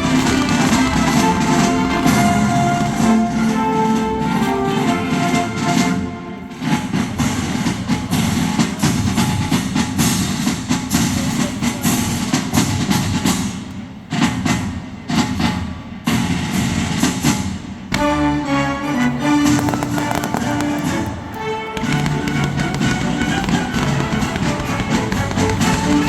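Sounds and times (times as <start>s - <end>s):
fireworks bangs and crackling: 0.0s - 5.9s, 19.0s - 26.0s
loud music: 0.0s - 7.9s, 18.0s - 26.0s.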